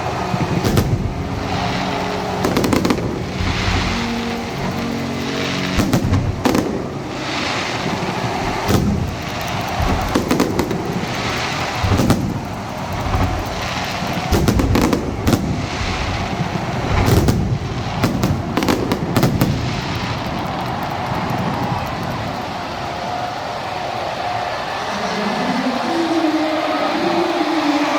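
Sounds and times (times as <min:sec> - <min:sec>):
low rumbling echo: 0:00.0 - 0:20.4
fireworks bangs: 0:00.0 - 0:27.9
fireworks crackling: 0:00.0 - 0:27.9.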